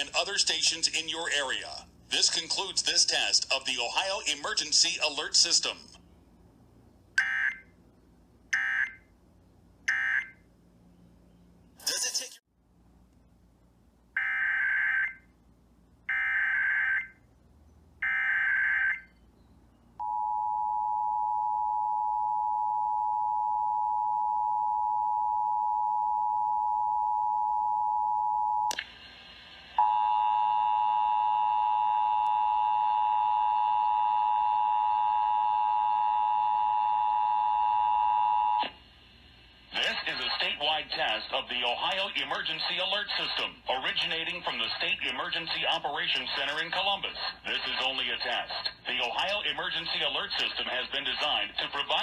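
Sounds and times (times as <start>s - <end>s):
click: 28.7s - 28.9s.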